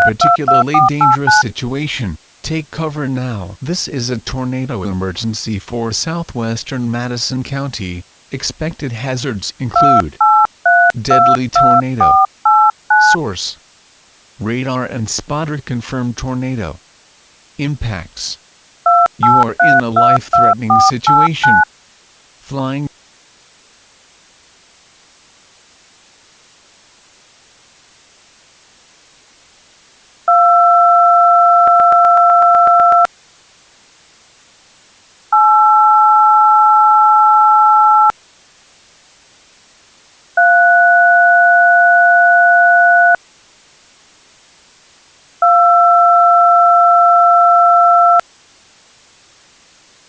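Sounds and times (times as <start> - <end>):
touch-tone dual tones: 0.0 - 1.5, 9.8 - 13.2, 18.9 - 21.7
faint hiss: 0.2 - 30.3, 33.1 - 41.9, 43.1 - 45.4, 48.2 - 50.0.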